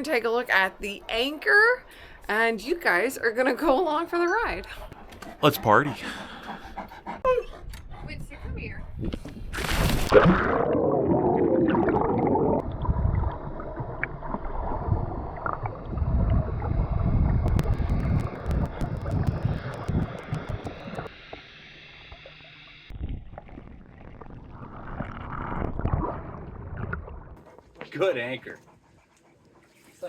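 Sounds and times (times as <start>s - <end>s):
fine crackling clicks: 17.5s - 21.1s.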